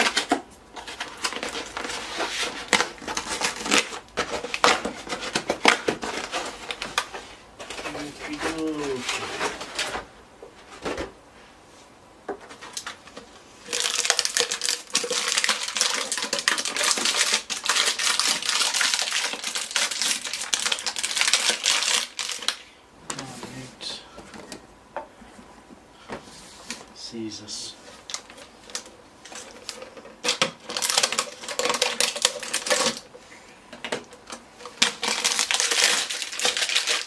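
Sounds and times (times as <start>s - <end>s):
packaging crackling and clicking: 0.0s - 10.0s, 12.4s - 23.3s, 28.0s - 33.2s, 33.8s - 37.0s.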